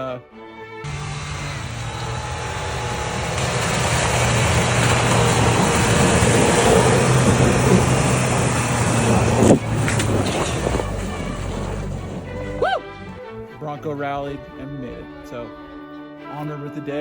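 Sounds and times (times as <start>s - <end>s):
low engine hum: 0.8s - 13.6s
loud rushing through snow: 0.9s - 13.2s.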